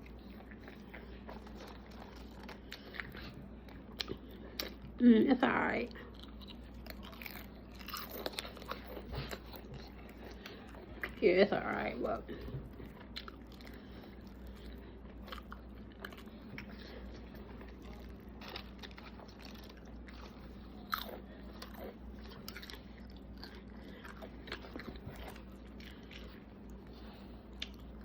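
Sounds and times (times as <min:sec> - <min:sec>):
person chewing food: 0:00.0 - 0:05.0, 0:05.9 - 0:11.2, 0:12.2 - 0:28.0
crunchy bites: 0:06.2 - 0:09.9.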